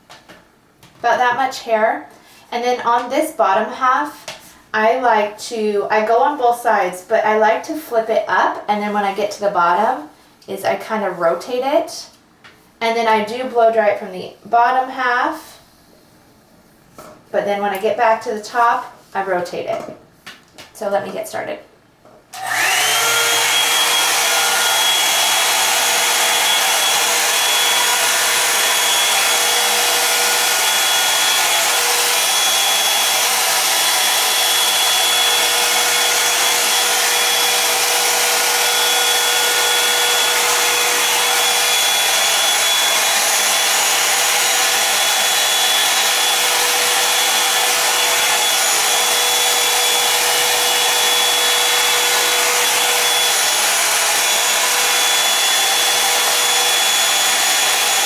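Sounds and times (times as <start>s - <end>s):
hair dryer brush running: 22.4s - 58.0s.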